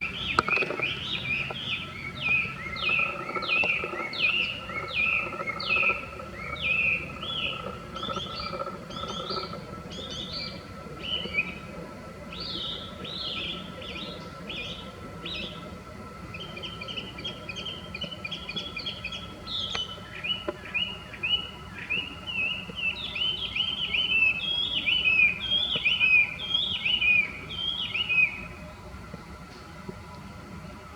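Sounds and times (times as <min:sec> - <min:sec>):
bird singing whistled notes: 0:00.0 - 0:11.6, 0:16.4 - 0:28.5.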